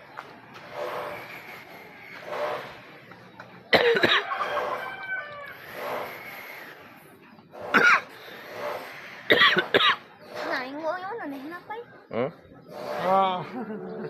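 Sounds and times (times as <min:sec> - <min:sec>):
person coughing: 0:03.7 - 0:04.3, 0:07.7 - 0:08.1.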